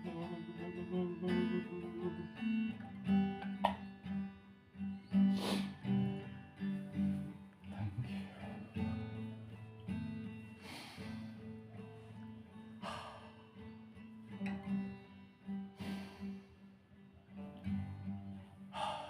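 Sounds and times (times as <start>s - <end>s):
acoustic guitar plucked and strummed: 0.0s - 19.0s
short hiss: 5.3s - 5.7s.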